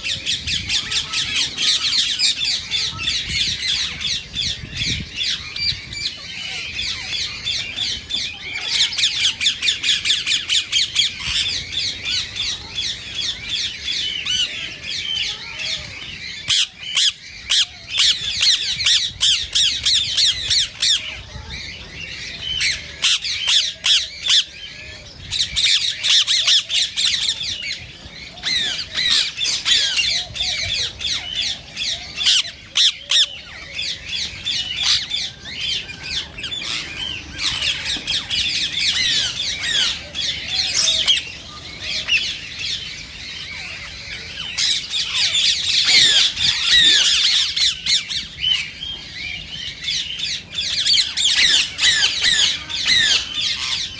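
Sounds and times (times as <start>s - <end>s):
parakeets squawking: 8.6s - 21.6s, 25.3s - 48.7s, 49.8s - 53.9s.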